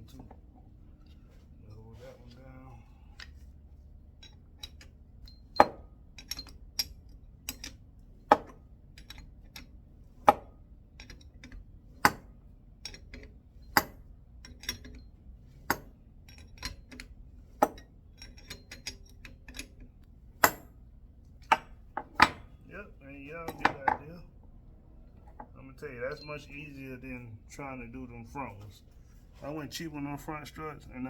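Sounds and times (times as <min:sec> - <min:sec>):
metal tool clinking on nut: 0:04.2 - 0:07.8, 0:08.4 - 0:09.7, 0:11.0 - 0:20.8, 0:23.4 - 0:24.1.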